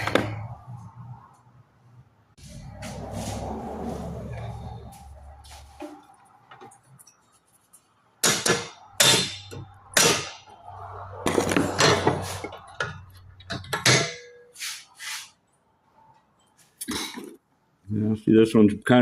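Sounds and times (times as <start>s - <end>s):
rubber mallet striking metal: 8.2s - 10.5s.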